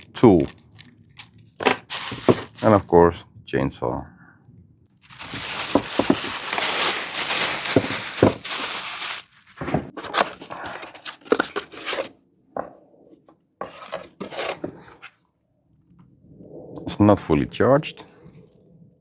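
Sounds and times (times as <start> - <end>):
packaging tearing and crinkling: 1.6 - 2.8, 5.0 - 12.1.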